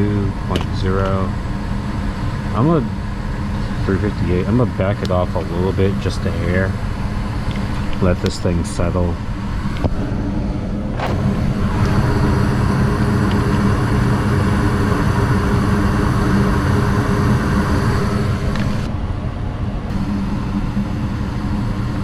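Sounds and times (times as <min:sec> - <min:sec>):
furnace hum: 0:00.0 - 0:22.0
furnace rushing: 0:03.6 - 0:18.9.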